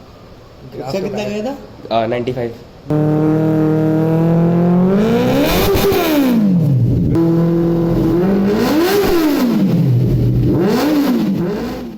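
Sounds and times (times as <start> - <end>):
motorcycle engine revving: 2.9 - 11.9.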